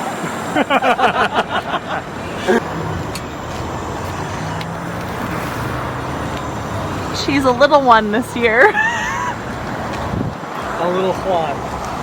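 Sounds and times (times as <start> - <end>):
vehicle engine rumble: 0.3 - 12.0.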